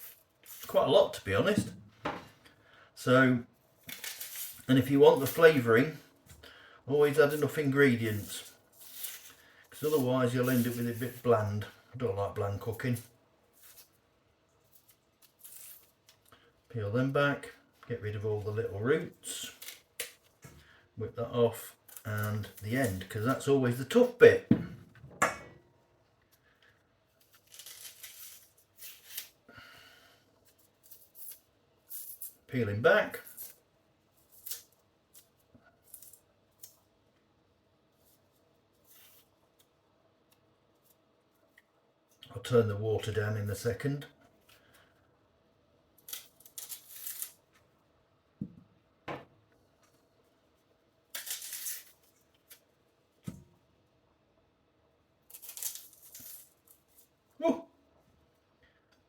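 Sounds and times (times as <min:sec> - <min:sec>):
onion skins crackling and rustling: 0:03.6 - 0:24.5, 0:26.2 - 0:37.0, 0:37.9 - 0:42.2, 0:45.9 - 0:47.7, 0:49.8 - 0:53.3, 0:55.2 - 0:57.4
onion skin rustling and tearing: 0:07.2 - 0:11.6, 0:13.5 - 0:16.4, 0:27.1 - 0:29.5, 0:33.3 - 0:36.9, 0:46.0 - 0:47.6, 0:51.0 - 0:53.2, 0:55.2 - 0:57.3.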